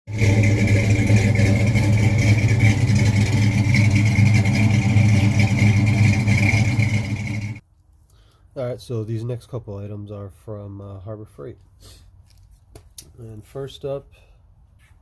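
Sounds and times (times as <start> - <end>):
car engine running: 0.1 - 7.6.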